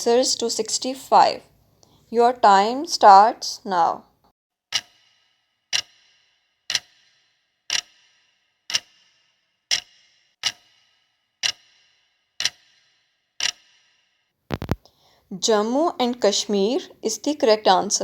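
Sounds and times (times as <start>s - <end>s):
clock ticking with ringing tail: 4.7s - 14.2s.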